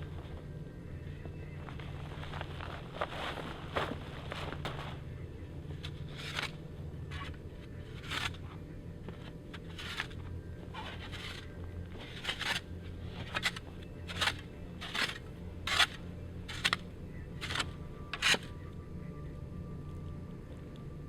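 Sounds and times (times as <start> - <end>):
footsteps crunching in snow: 1.2 - 5.2, 9.0 - 18.5.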